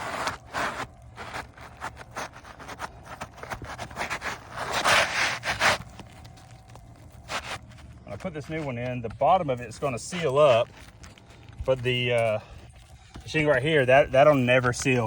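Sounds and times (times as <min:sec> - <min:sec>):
shingle scraping on shingle: 0:00.0 - 0:08.8.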